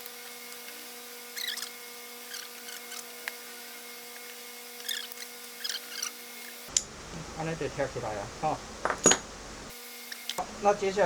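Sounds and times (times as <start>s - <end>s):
metal parts scraping squeaks: 0.0s - 6.7s
steady background hum: 0.0s - 11.0s.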